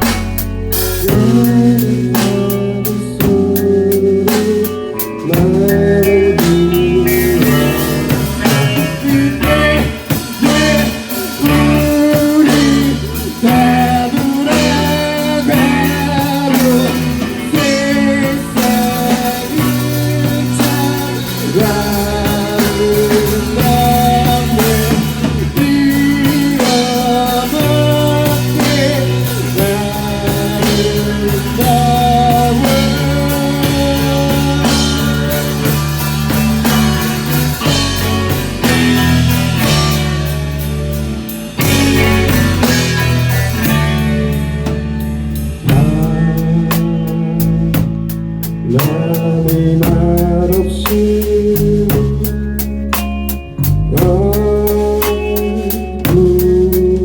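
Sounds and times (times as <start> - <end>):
bass guitar: 0.0 - 57.0
guitar melody: 0.0 - 57.0
steady drum beat: 0.0 - 57.0.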